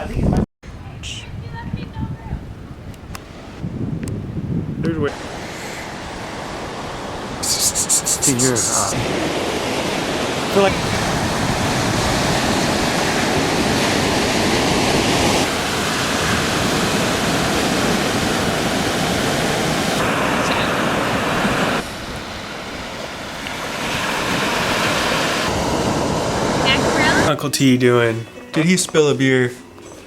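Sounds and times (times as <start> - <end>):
steady rushing noise: 4.9 - 27.3.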